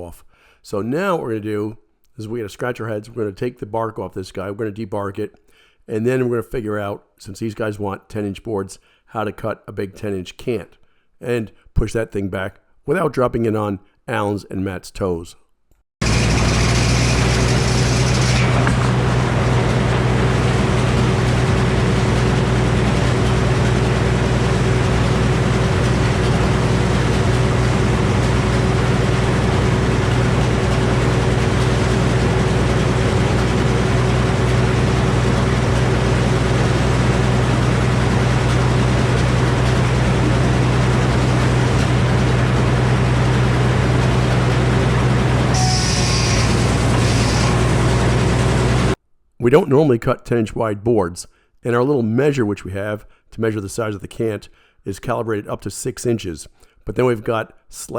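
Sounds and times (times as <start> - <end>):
sawmill machinery running: 16.0 - 49.0.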